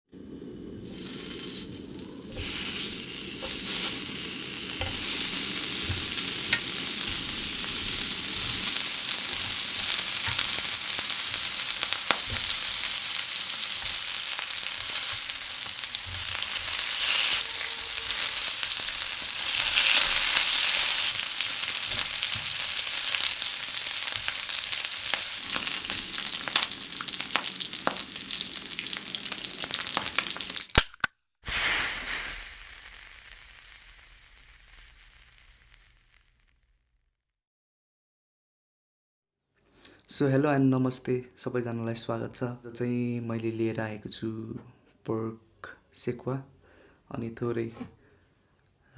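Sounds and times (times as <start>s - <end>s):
meat sizzling and frying: 0.2s - 37.0s.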